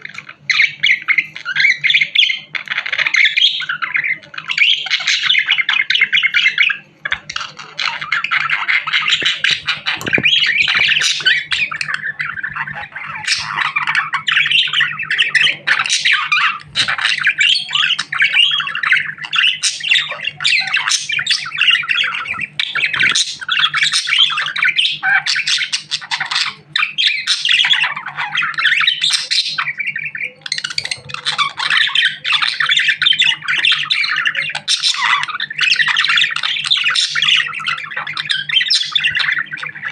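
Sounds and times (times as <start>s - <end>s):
budgerigar warbling and chattering: 0.0s - 39.9s.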